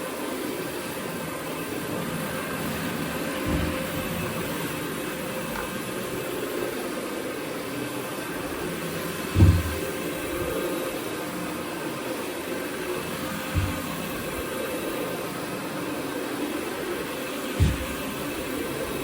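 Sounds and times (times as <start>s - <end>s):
carpet cleaning machine humming: 0.0s - 19.0s
low thump: 3.4s - 4.2s, 9.3s - 10.5s, 13.5s - 14.4s, 17.6s - 18.1s.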